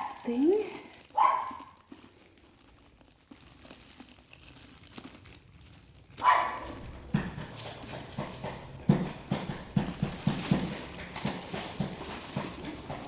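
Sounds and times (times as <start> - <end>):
dog barking: 1.1 - 1.8, 6.2 - 6.8
cardboard box rustling: 6.6 - 13.0.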